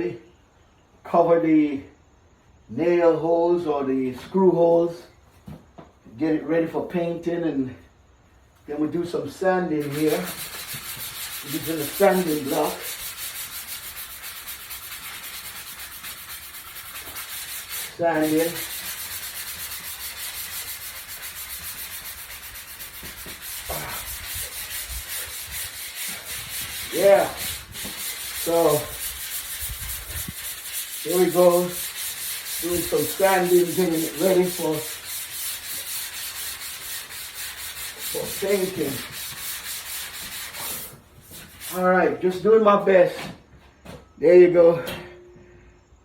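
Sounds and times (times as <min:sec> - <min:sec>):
sanding block rubbing drywall: 0:09.3 - 0:42.1.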